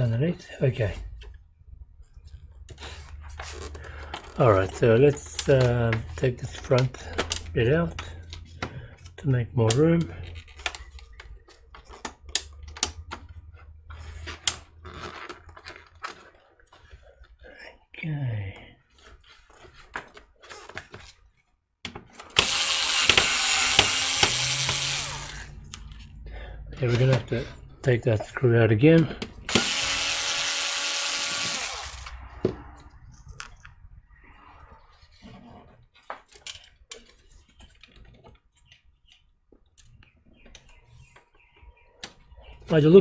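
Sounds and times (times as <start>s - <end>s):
clicks of parts and screws handled: 2.4s - 17.0s
small parts clicking: 21.9s - 26.2s, 29.0s - 32.3s
electric screwdriver whirring: 22.3s - 26.0s, 29.2s - 32.4s.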